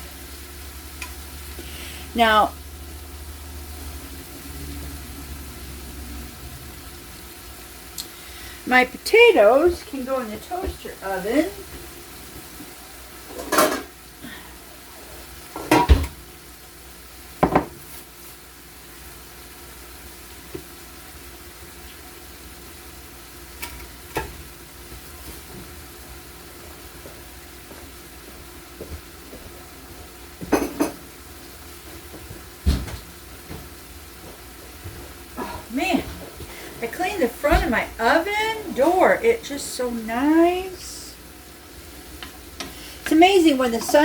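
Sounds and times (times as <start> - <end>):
food sizzling in skillet: 0.0 - 44.0
pans and dishes clattering: 13.3 - 14.0, 15.5 - 16.2, 30.4 - 31.1.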